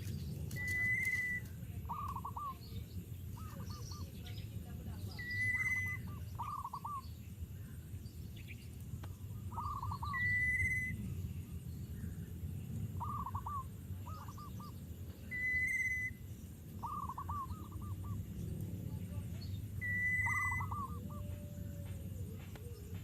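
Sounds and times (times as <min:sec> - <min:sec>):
low steady background rumble: 0:00.0 - 0:23.0
high bird whistle: 0:00.5 - 0:02.6, 0:09.6 - 0:11.0, 0:13.0 - 0:18.1, 0:19.8 - 0:21.3.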